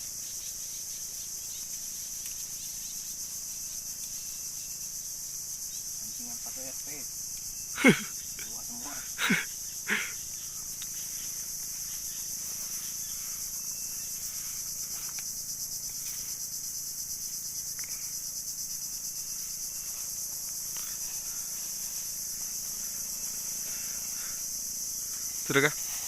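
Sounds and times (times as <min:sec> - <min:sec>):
high-pitched insect chorus: 0:00.0 - 0:26.0
faint ticks: 0:01.5 - 0:02.5, 0:03.9 - 0:04.3, 0:10.7 - 0:11.0, 0:14.9 - 0:16.4, 0:17.6 - 0:18.2.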